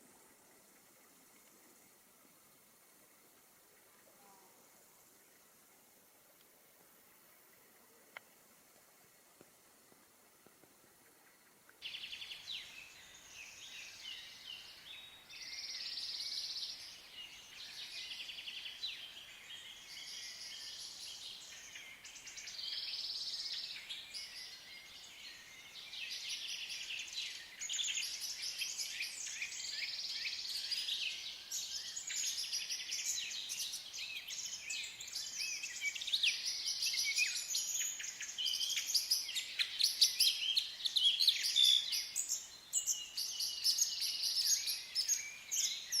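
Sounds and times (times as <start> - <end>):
birds singing: 11.8 - 46.0.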